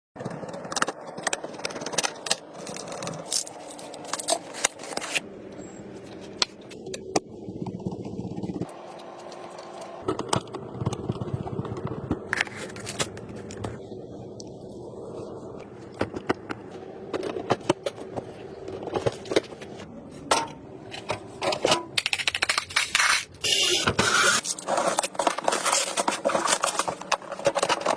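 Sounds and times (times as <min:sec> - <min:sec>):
clicks and scrapes of computer parts: 0:16.0 - 0:27.9.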